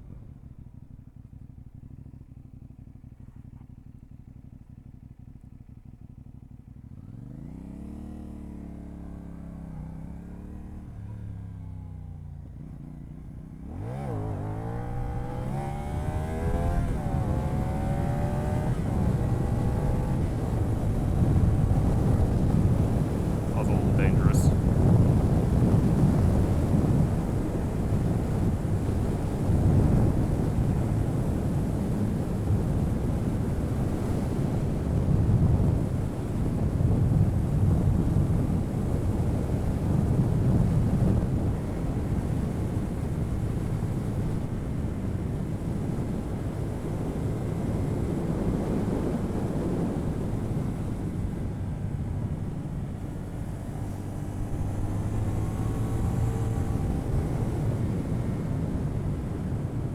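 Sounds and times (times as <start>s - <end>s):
motorcycle engine: 0.0s - 59.9s
wind rushing over microphone: 13.6s - 59.9s.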